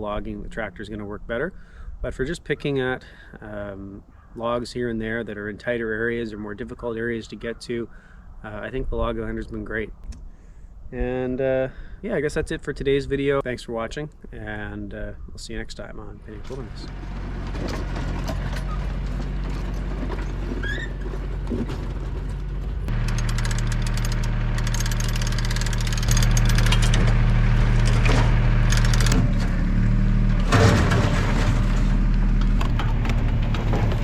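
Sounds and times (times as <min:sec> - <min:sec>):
quad bike engine revving: 0:22.9 - 0:30.9.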